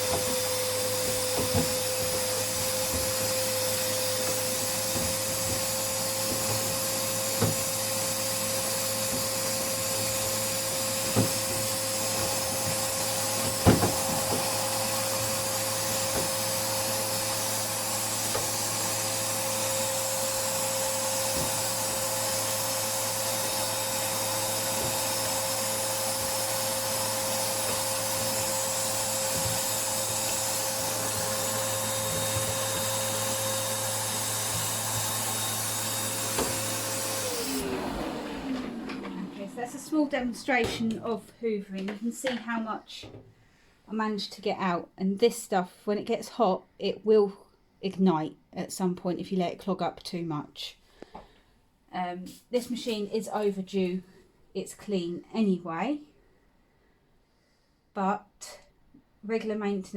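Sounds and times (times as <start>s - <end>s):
vacuum cleaner whining: 0.0s - 41.3s.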